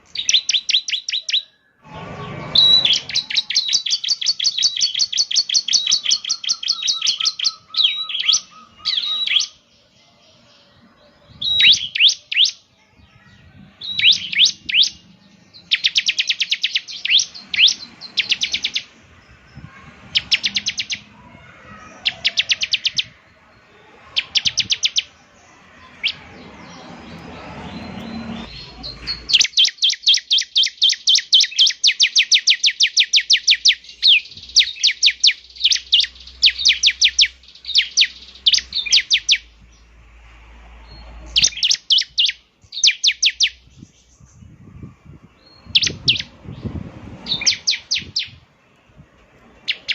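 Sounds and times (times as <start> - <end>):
bird chirping rapidly: 0.0 - 40.0, 40.8 - 49.9.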